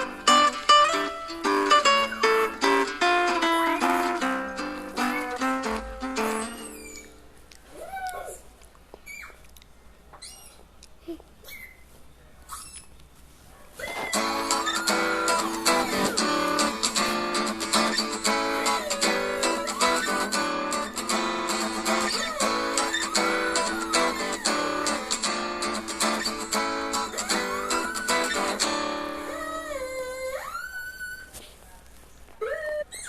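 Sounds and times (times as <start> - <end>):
plucked guitar-like ringtone: 0.0 - 6.7, 14.2 - 29.2
dog howling: 13.8 - 16.8, 17.7 - 20.5, 21.9 - 25.1, 27.0 - 31.4.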